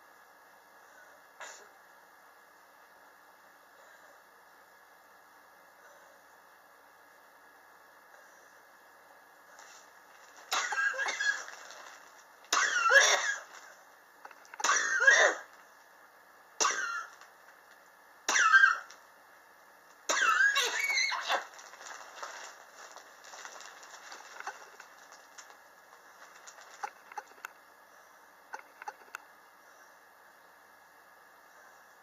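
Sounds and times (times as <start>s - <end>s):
person coughing: 10.5s - 11.5s, 12.5s - 13.5s, 14.6s - 15.5s, 16.6s - 17.2s, 18.3s - 18.9s, 20.1s - 20.8s.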